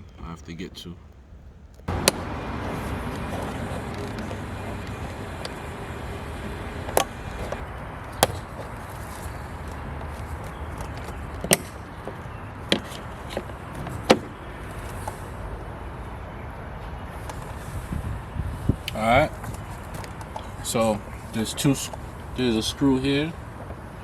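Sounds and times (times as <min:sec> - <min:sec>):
steady low rumble: 0:00.0 - 0:13.2.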